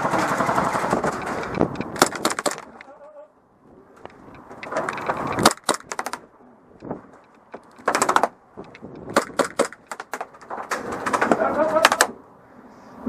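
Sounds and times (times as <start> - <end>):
airsoft gun full-auto bursts: 0.0 - 1.1.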